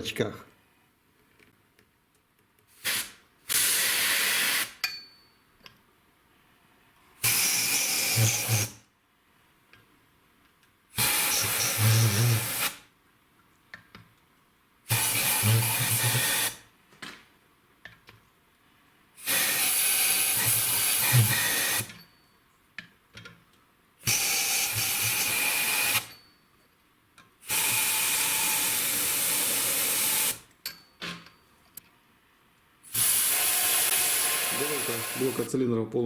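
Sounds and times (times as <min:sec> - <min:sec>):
compressed air hissing from blow gun: 0:02.8 - 0:04.8, 0:07.2 - 0:08.8, 0:11.0 - 0:12.8, 0:14.9 - 0:16.6, 0:19.2 - 0:21.9, 0:27.4 - 0:30.4, 0:32.9 - 0:35.5.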